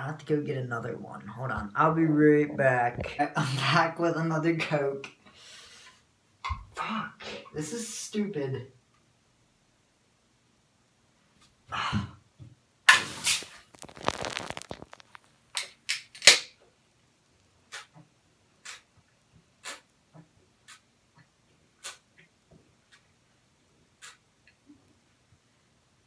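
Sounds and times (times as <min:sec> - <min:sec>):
can bursting open with fizz: 0:12.9 - 0:16.5.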